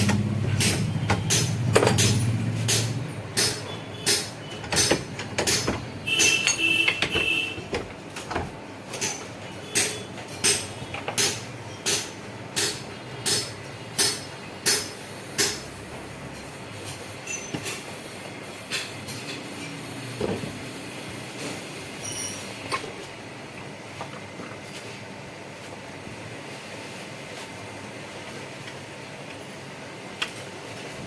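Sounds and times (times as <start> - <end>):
hammer blows: 0.1 - 7.8
brief high squeak: 22.0 - 22.6.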